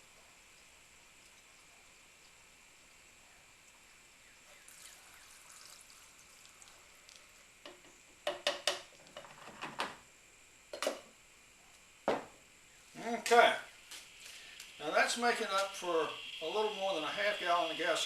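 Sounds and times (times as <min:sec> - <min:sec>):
fuel trickling through a funnel: 0:00.0 - 0:07.6.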